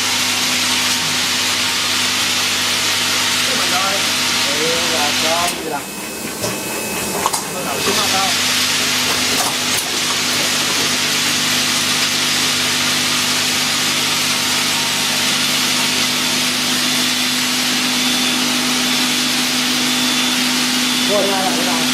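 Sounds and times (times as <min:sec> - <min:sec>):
machine hum: 0:00.0 - 0:21.9.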